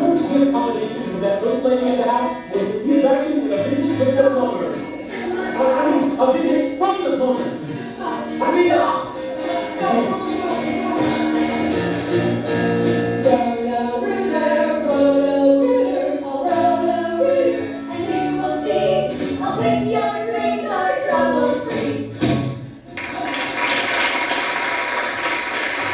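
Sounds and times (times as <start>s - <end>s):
group singing with instruments: 5.0s - 6.3s, 9.0s - 22.4s.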